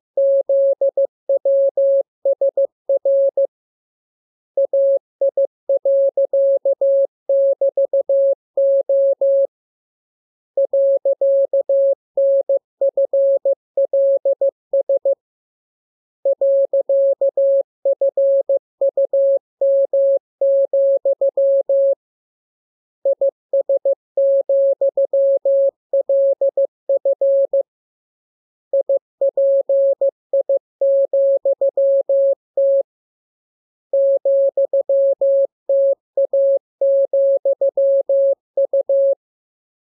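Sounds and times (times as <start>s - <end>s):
morse code tone: 28.7s - 32.8s, 33.9s - 39.2s.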